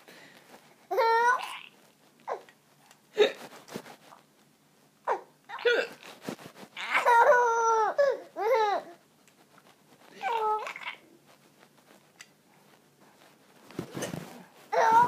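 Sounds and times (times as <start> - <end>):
baby squealing laugh: 6.8 - 8.7.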